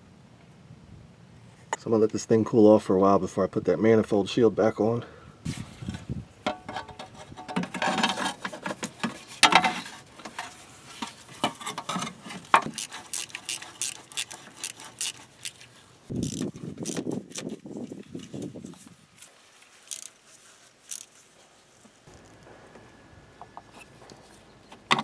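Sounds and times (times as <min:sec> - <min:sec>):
hand tools clinking and knocking: 0:06.5 - 0:17.0.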